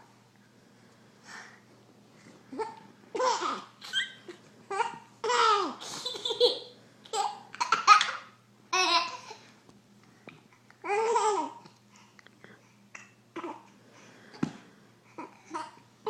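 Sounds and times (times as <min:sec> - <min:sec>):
baby giggling and laughing: 0:02.5 - 0:09.4, 0:10.8 - 0:11.6.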